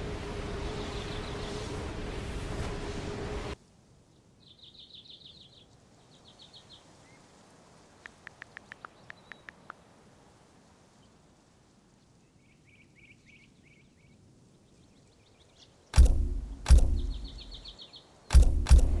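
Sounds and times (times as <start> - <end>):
loud thuds with low rumble: 16.0 - 17.6, 18.3 - 19.0
rapid chirping: 16.0 - 17.7, 18.3 - 19.0.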